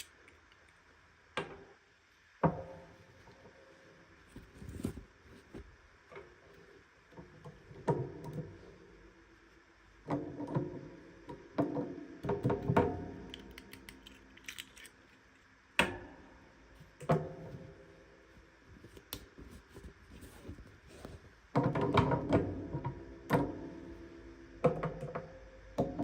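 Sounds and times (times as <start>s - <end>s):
packaging crinkling: 13.4s - 14.9s.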